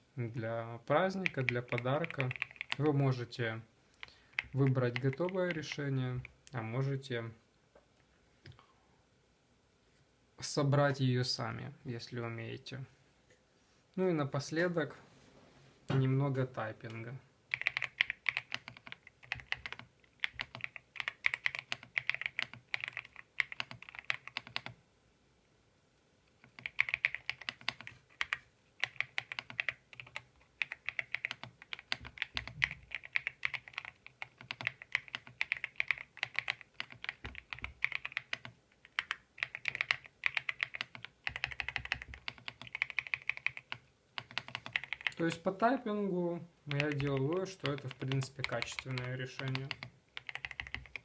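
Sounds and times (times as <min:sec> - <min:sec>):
mechanical keyboard typing: 0:01.1 - 0:03.1, 0:04.0 - 0:06.4, 0:17.5 - 0:24.8, 0:26.4 - 0:45.4, 0:46.7 - 0:51.0.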